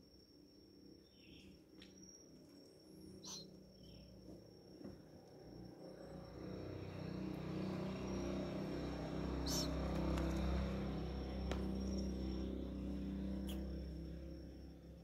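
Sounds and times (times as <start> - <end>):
vehicle engine running: 6.0 - 15.0.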